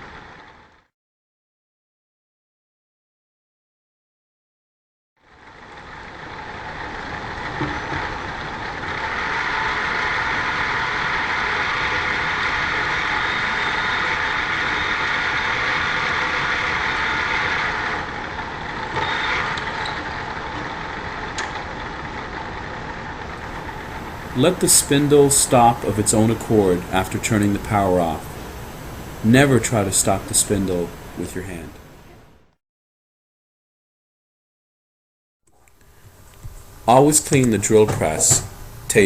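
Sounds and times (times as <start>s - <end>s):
drill press humming: 5.3s - 32.6s, 35.5s - 39.0s.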